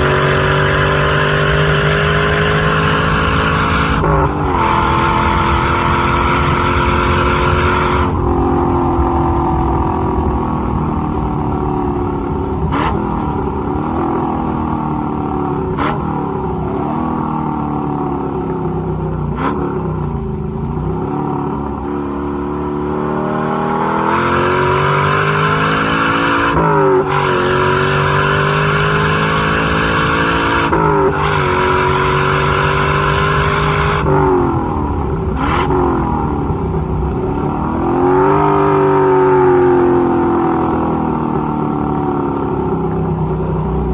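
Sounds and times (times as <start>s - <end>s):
car engine accelerating through gears: 0.0s - 43.9s.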